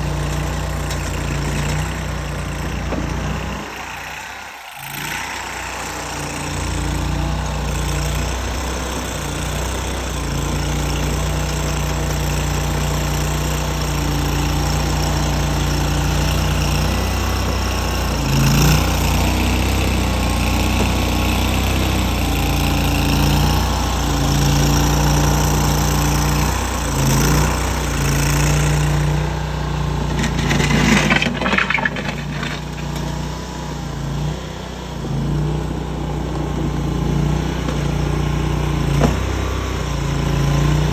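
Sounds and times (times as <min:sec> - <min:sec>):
clattering knocks and scraping: 0:00.0 - 0:04.1, 0:29.8 - 0:33.6, 0:38.8 - 0:39.5
skid steer engine running: 0:00.0 - 0:40.9.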